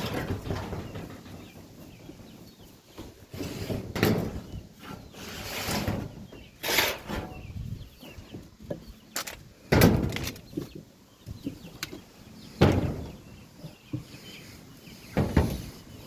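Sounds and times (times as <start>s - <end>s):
wind buffeting microphone: 7.2s - 9.0s.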